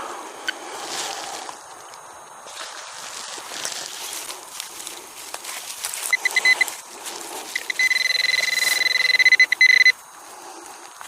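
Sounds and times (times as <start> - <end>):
soil and stubble rustling: 0.0 - 11.0
metal detector pinpointer beeping: 6.1 - 6.8, 7.5 - 10.0.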